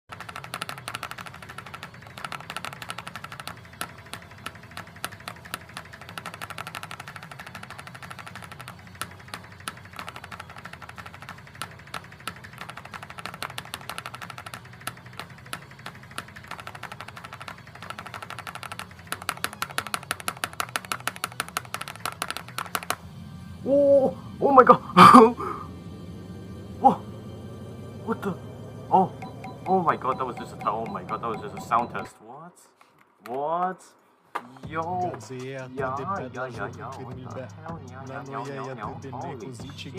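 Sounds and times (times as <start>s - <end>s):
rapid irregular clicks: 0.0s - 23.1s, 24.3s - 32.2s, 34.6s - 39.9s
steady low hum: 23.0s - 32.0s.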